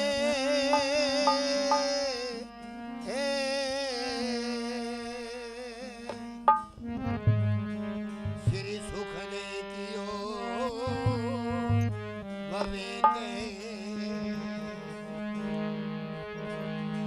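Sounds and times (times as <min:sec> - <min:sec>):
held melodic notes with vibrato: 0:00.0 - 0:03.2, 0:05.9 - 0:17.0
steady drone: 0:00.1 - 0:02.4.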